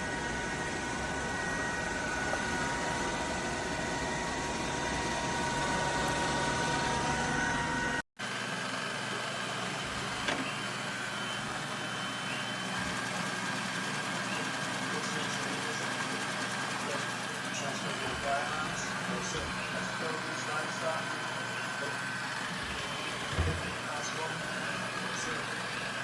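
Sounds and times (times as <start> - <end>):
high whines: 0.0 - 8.0
robot vacuum whirring: 0.0 - 26.0.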